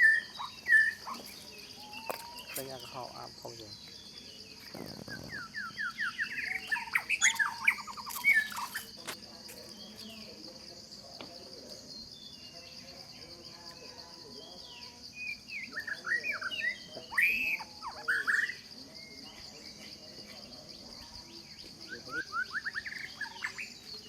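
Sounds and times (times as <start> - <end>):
birds chirping: 0.0 - 24.0
high-pitched insect drone: 0.0 - 24.0.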